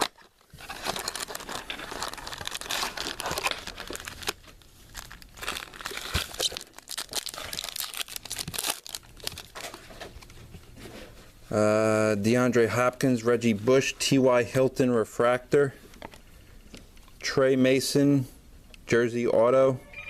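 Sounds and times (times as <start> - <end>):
packaging crinkling and tearing: 0.0 - 10.4.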